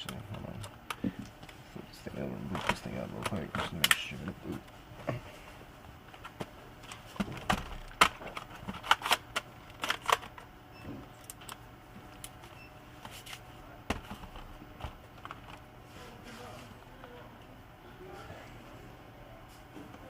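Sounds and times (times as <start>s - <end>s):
laptop being handled clicks and knocks: 6.2s - 10.5s.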